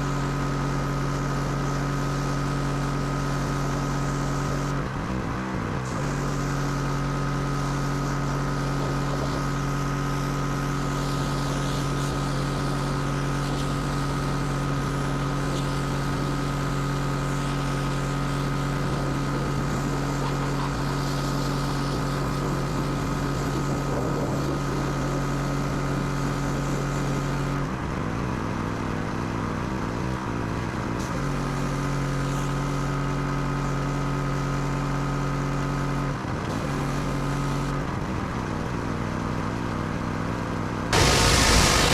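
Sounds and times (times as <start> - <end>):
pressure washer motor: 0.0 - 29.1, 40.9 - 41.9
spray hissing: 41.0 - 41.9.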